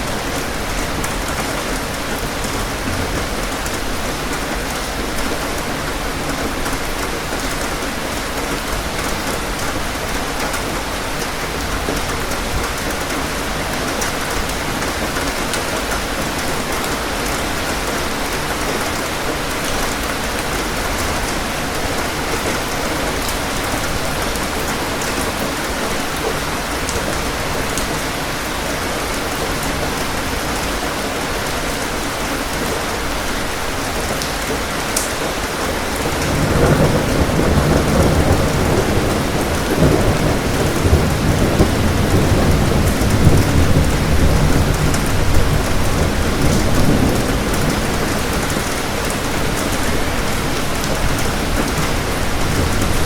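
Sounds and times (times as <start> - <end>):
steady rain falling: 0.0 - 53.0
rolling thunder: 36.0 - 53.0.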